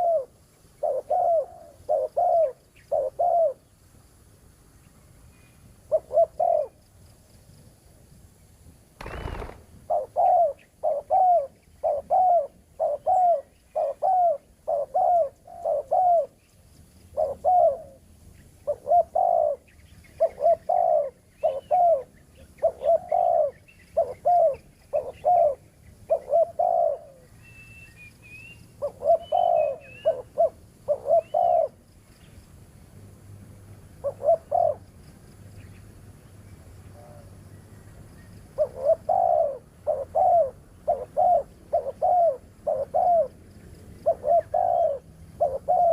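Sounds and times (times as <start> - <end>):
doves cooing: 0.0 - 3.6, 5.9 - 6.8, 9.0 - 16.4, 17.2 - 18.0, 18.7 - 27.4, 28.8 - 31.8, 34.0 - 34.8, 38.6 - 43.4, 44.0 - 45.9.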